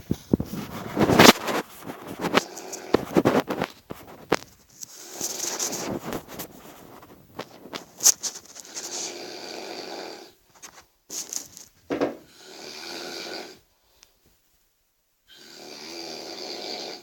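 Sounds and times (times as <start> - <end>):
clicks and snorts: 0.8 - 9.2
person snoring loudly: 8.8 - 10.4, 12.2 - 13.6, 15.3 - 17.0.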